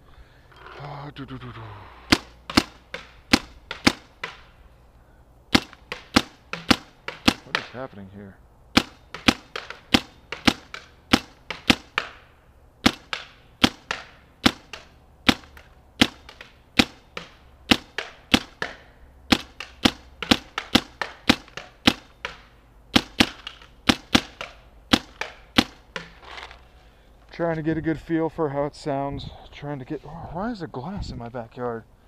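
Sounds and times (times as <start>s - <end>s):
paintball marker firing pops: 2.1s - 4.5s, 5.5s - 7.8s, 8.8s - 12.2s, 12.8s - 26.2s.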